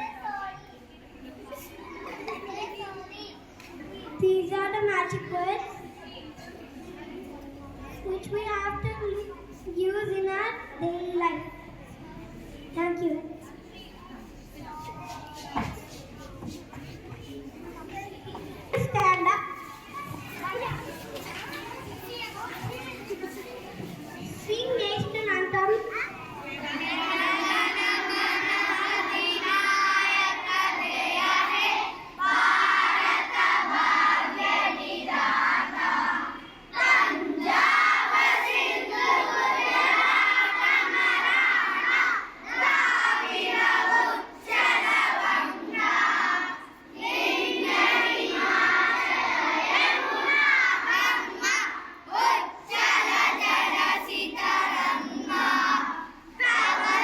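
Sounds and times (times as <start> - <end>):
young children singing: 26.6 - 57.0.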